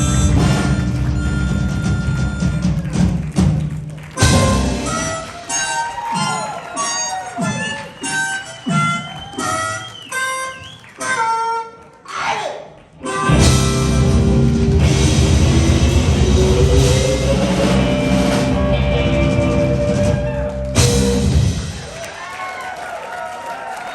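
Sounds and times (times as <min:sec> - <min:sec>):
rolling drums and cymbals: 0:00.0 - 0:05.5, 0:13.3 - 0:22.1
blues band playing: 0:00.0 - 0:12.0, 0:13.0 - 0:22.2.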